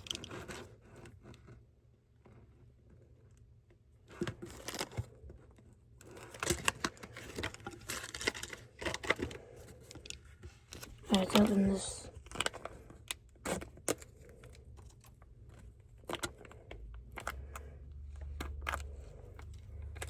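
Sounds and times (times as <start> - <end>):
plastic packaging crinkling: 6.0 - 17.3.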